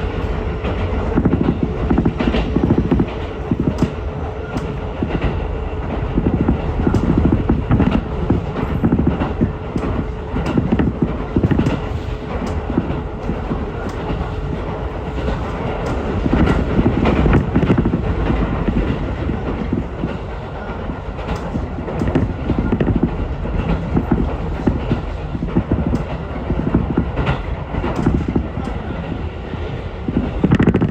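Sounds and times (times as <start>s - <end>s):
train wheels rumbling on rail: 0.0s - 30.9s.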